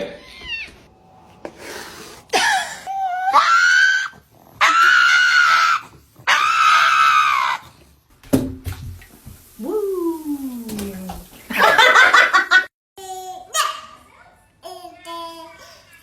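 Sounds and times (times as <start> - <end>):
high-pitched screams: 2.9 - 7.6.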